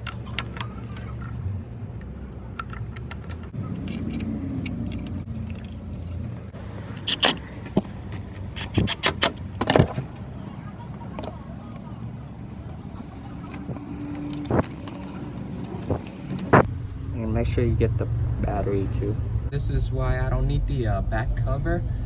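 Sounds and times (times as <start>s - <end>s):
metal tools clinking and scraping: 12.7s - 16.7s.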